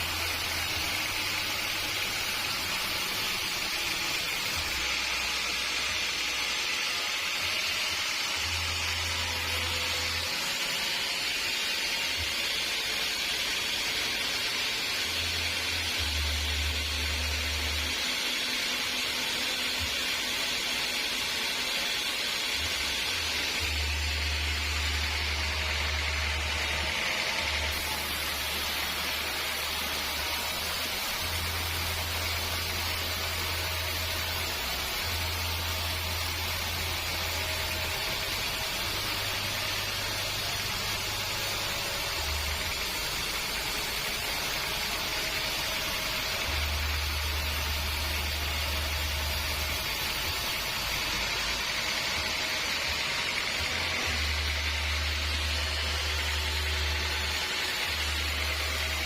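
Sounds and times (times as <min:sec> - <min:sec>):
machinery hiss: 0:21.9 - 0:59.0.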